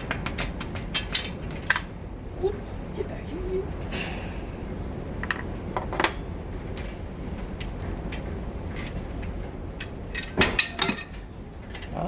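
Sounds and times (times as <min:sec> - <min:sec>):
small metal hardware clinking: 0:09.8 - 0:11.2.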